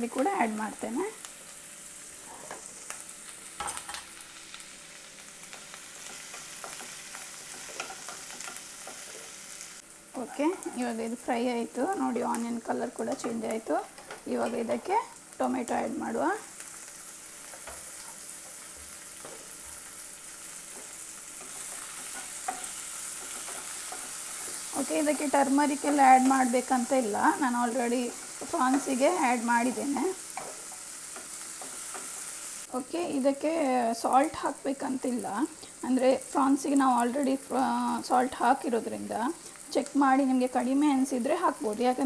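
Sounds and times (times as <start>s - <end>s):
vegetables sizzling in oil: 0.0s - 42.0s.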